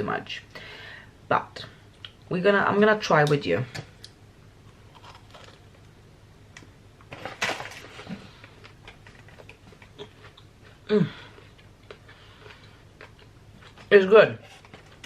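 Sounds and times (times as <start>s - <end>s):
person chewing: 4.0s - 5.9s, 8.4s - 13.9s
crunchy bite: 4.8s - 5.7s.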